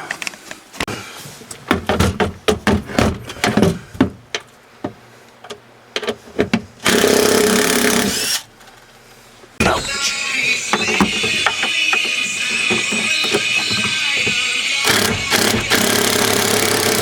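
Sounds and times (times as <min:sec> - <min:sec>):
loud steady whirring: 0:09.6 - 0:17.0
tool clicking and knocking: 0:10.7 - 0:17.0.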